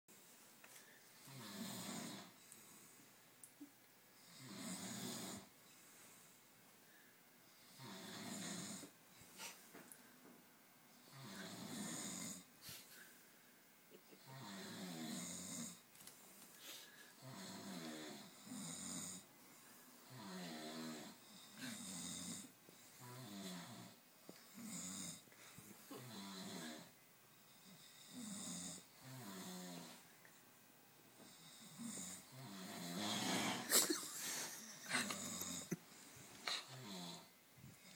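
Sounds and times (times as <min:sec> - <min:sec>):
men snoring: 0:01.3 - 0:02.4, 0:04.2 - 0:05.5, 0:07.7 - 0:08.9, 0:11.0 - 0:12.5, 0:14.2 - 0:15.8, 0:17.2 - 0:19.3, 0:20.0 - 0:25.2, 0:25.9 - 0:26.9, 0:31.3 - 0:33.8, 0:34.5 - 0:35.8.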